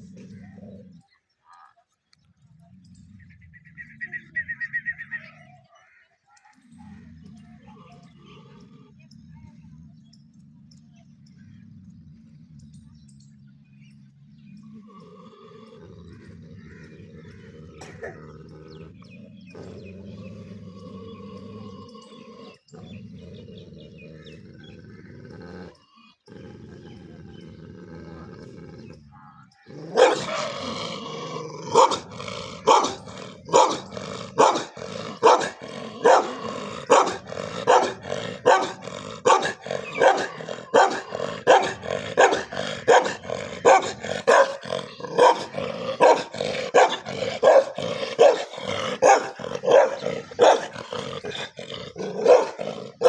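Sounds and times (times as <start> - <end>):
dog growling low: 0.0 - 1.2, 2.2 - 4.5, 6.6 - 53.0
dog barking loudly: 29.9 - 30.7, 31.6 - 53.0.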